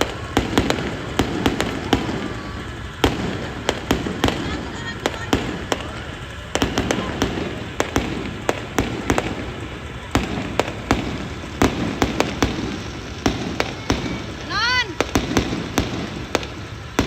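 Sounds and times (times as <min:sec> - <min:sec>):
distant firework bursts: 0:00.0 - 0:17.0
fireworks bangs and pops: 0:00.0 - 0:17.0.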